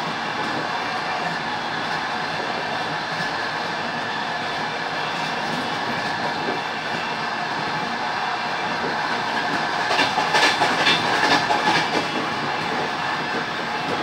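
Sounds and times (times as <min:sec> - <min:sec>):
train wheels on rails: 0:00.0 - 0:14.0
sharp clacks over track: 0:08.8 - 0:14.0.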